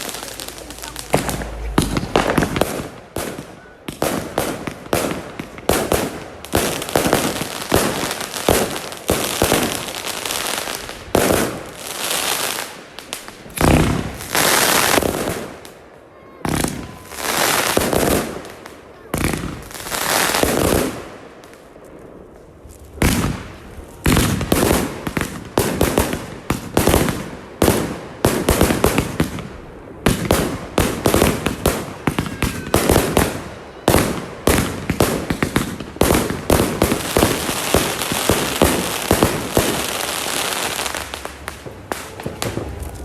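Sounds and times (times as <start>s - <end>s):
fireworks bangs and crackling: 0.0s - 43.0s.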